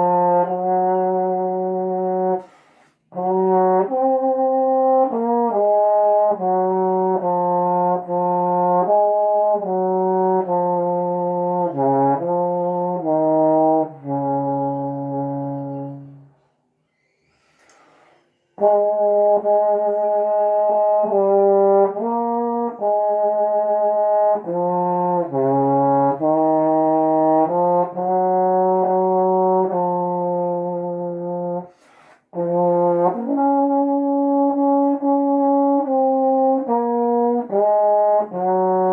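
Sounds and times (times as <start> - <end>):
solo trombone playing hymn: 0.0 - 16.3, 18.6 - 38.9.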